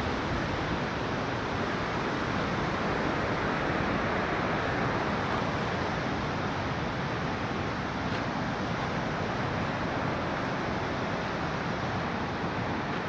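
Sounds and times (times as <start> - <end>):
river water rushing: 0.0 - 13.0.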